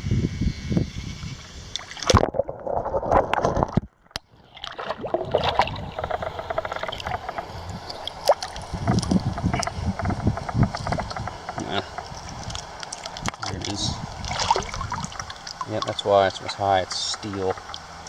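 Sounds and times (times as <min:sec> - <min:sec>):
water sloshing and gurgling: 0:01.2 - 0:18.0
stones and gravel knocking: 0:05.3 - 0:07.5, 0:08.4 - 0:13.7.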